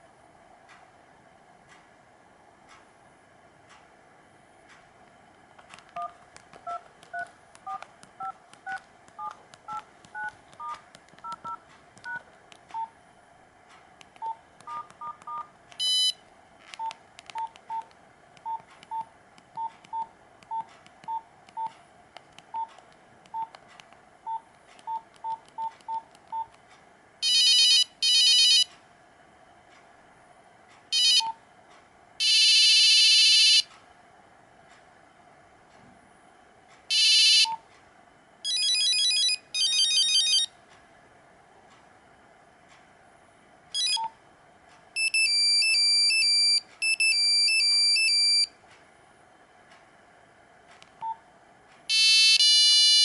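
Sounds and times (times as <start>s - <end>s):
mobile phone beeps: 14.2s - 16.2s, 38.5s - 40.5s, 43.8s - 44.1s, 45.0s - 48.5s, 51.9s - 53.0s.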